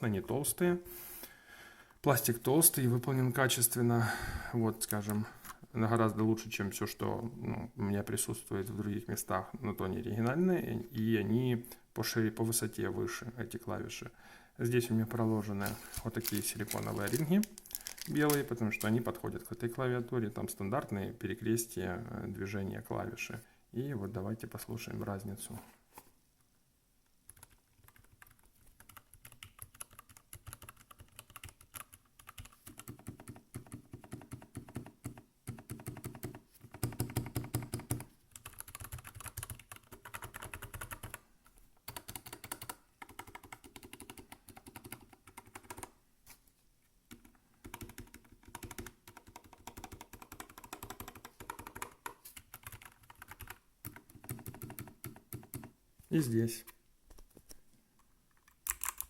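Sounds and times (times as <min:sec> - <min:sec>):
mechanical keyboard typing: 0:27.3 - 0:41.2, 0:41.8 - 0:45.9, 0:47.1 - 0:55.7, 0:58.5 - 0:59.0.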